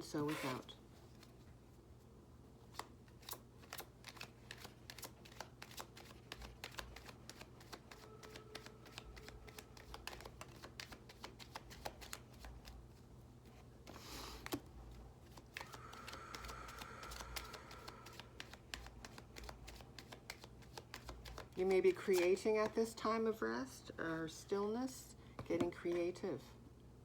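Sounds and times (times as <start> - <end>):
cards being shuffled: 2.6 - 23.0.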